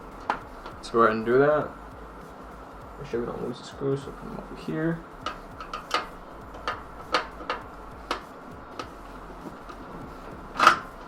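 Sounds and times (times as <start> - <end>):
screws clicking and tapping: 5.2 - 11.0.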